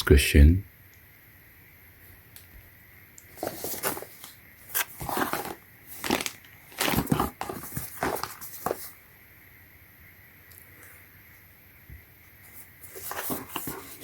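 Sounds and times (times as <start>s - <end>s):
packaging crinkling: 3.3s - 8.9s.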